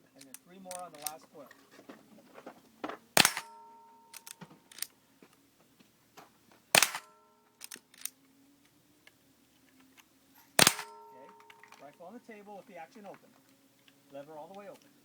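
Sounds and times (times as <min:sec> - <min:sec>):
rifle lever clicks and clacks: 0:00.2 - 0:01.2, 0:03.2 - 0:04.9, 0:06.8 - 0:08.2, 0:10.6 - 0:11.9
rifle shots: 0:03.2 - 0:03.6, 0:06.7 - 0:07.8, 0:10.6 - 0:11.3
steel target ringing: 0:03.2 - 0:04.2, 0:10.6 - 0:11.9.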